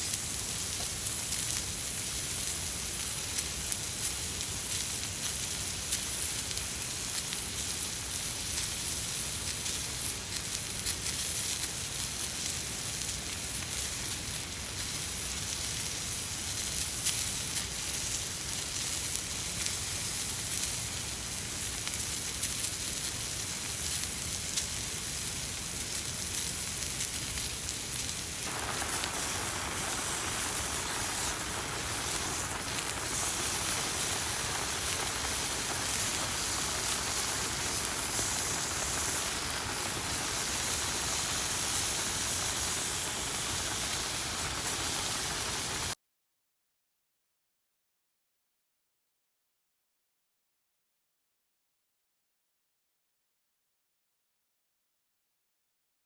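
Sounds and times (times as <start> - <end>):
steady rain falling: 0.0 - 18.7, 22.5 - 46.0
sharp crackles: 0.0 - 46.0.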